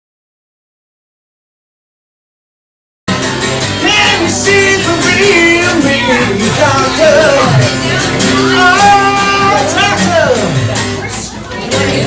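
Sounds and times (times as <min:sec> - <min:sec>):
person singing: 0:03.1 - 0:10.7
live band music: 0:03.1 - 0:12.0.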